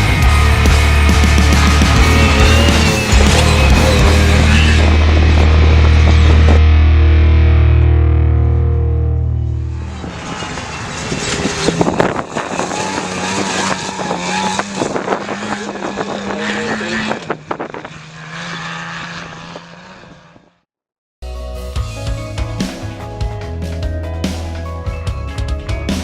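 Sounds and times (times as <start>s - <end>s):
truck engine running hard: 0.0s - 7.2s, 8.2s - 19.9s.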